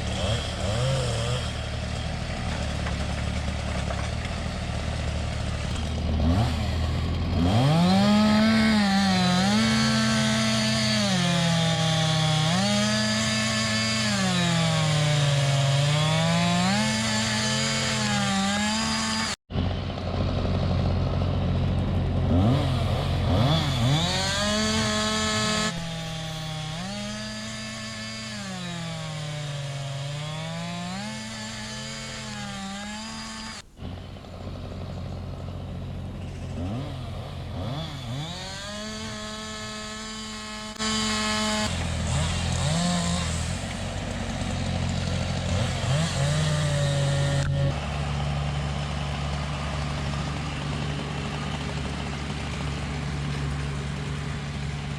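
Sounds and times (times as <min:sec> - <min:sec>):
engine running and revving: 0:00.0 - 0:54.9.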